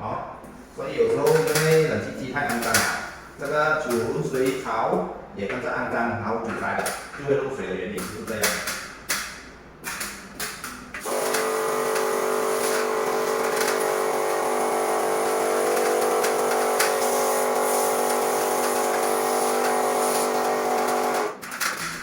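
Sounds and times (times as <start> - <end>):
water spray hiss: 11.0 - 21.3
pressure washer motor hum: 11.0 - 21.4.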